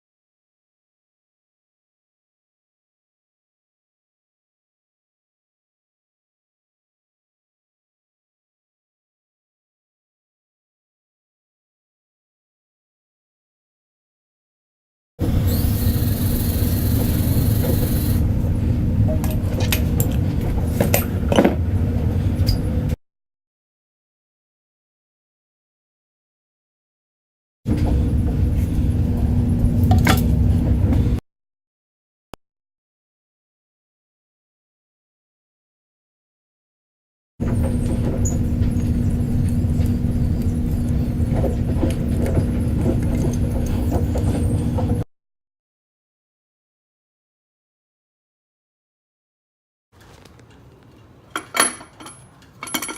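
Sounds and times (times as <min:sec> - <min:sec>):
low hum: 0:15.2 - 0:23.0, 0:27.7 - 0:31.2, 0:37.4 - 0:45.0
low rumble: 0:15.2 - 0:23.0, 0:27.7 - 0:31.2, 0:37.4 - 0:45.0
metallic clinks and knocks: 0:51.3 - 0:52.9.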